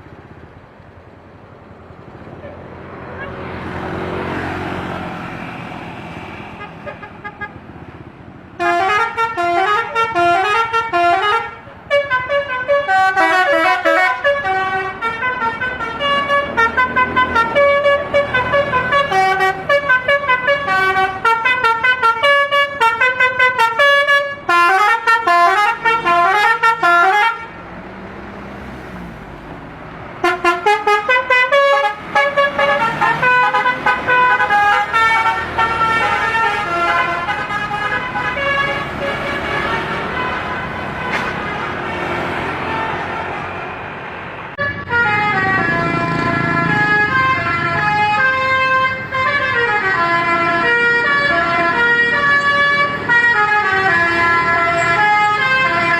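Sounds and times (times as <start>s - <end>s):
traffic engine noise: 0.0s - 55.9s
musical air horn melody: 8.6s - 27.6s, 30.2s - 43.5s.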